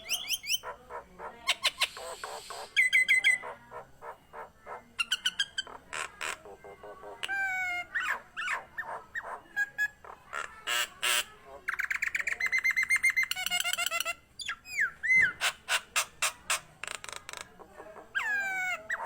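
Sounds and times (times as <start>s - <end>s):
myna singing clicks and whistles: 0.0s - 0.6s, 1.5s - 3.4s.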